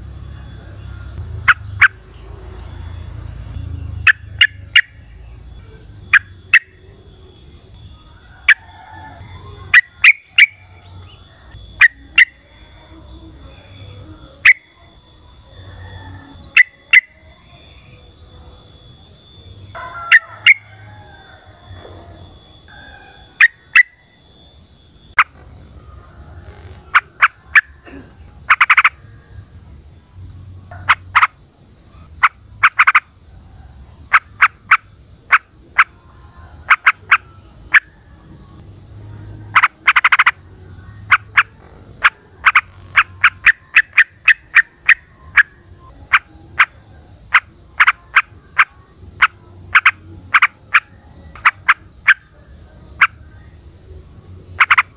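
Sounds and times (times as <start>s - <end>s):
high-pitched insect buzz: 19.2s - 33.4s.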